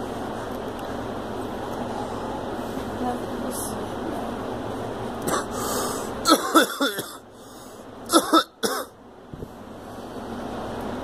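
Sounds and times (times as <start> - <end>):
girl coughing: 5.3 - 5.5, 6.2 - 7.2, 8.1 - 8.9.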